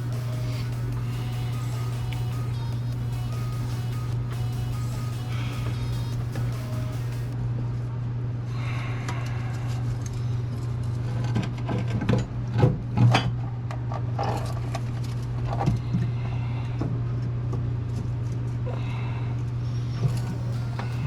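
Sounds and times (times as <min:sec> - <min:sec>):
steady low hum: 0:00.0 - 0:11.1, 0:18.6 - 0:21.0.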